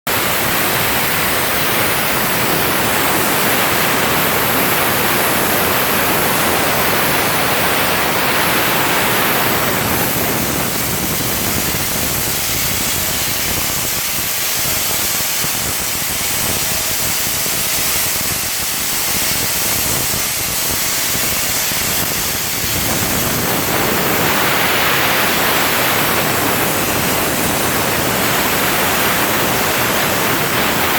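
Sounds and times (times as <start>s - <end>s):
plasma torch cutting steel: 0.1s - 30.9s.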